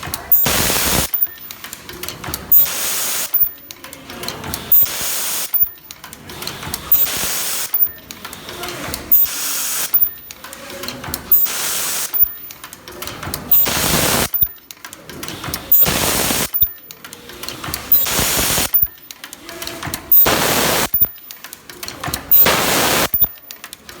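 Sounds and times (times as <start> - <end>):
mechanical clicking and clatter: 0.0 - 24.0
welding machine hissing bursts: 0.3 - 1.6, 2.5 - 3.6, 4.6 - 5.8, 6.8 - 8.0, 8.8 - 10.4, 11.2 - 12.6, 13.5 - 14.5, 15.4 - 16.8, 17.7 - 19.0, 20.1 - 21.3, 22.3 - 23.4.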